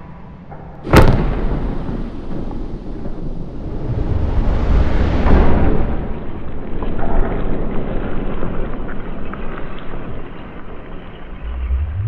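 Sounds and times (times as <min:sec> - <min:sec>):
slowed air cannon blast rumble: 0:00.8 - 0:08.8, 0:11.0 - 0:12.0
faint crackles: 0:02.2 - 0:12.0.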